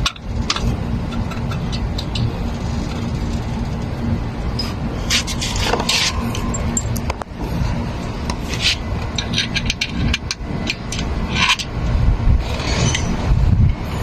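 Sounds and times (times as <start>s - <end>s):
steady low hum: 0.0s - 14.0s
scraping and rubbing hand work: 4.6s - 11.7s.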